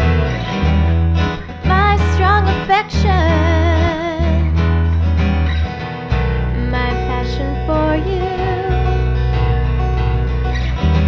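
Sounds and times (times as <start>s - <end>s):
deep bass notes: 0.0s - 11.0s
strummed acoustic guitar: 0.0s - 11.0s
person singing: 1.6s - 4.7s, 6.5s - 9.1s.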